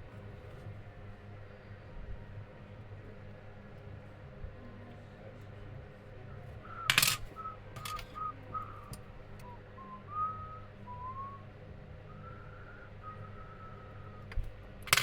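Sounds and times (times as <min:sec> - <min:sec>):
person whistling: 0:06.7 - 0:11.4
metal parts set down on bench: 0:06.9 - 0:08.2, 0:14.3 - 0:15.0.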